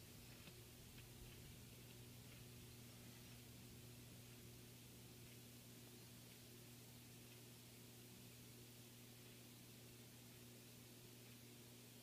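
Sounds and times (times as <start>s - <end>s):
faint electrical hum: 0.0s - 12.0s
faint ticks: 0.2s - 6.6s.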